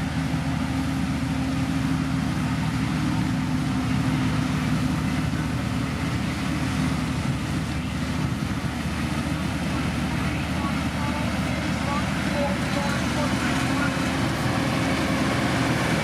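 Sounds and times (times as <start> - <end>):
diesel engine running steadily: 0.0 - 16.0.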